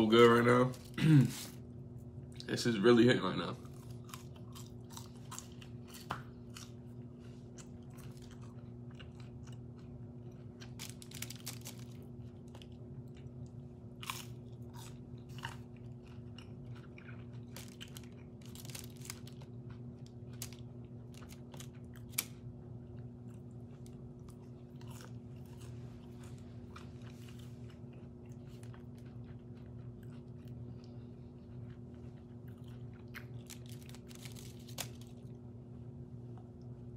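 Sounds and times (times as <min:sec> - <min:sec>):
low hum: 0:00.0 - 0:36.9
close-up chewing food: 0:03.6 - 0:35.4.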